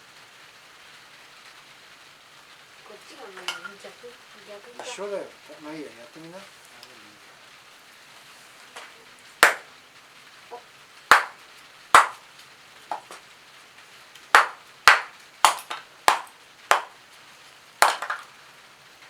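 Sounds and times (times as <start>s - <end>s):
light taps: 12.9s - 13.2s.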